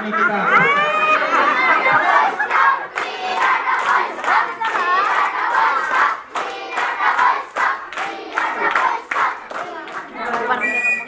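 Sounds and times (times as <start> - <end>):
crowd of young voices chanting: 1.8 - 10.0
hand claps: 2.9 - 10.6.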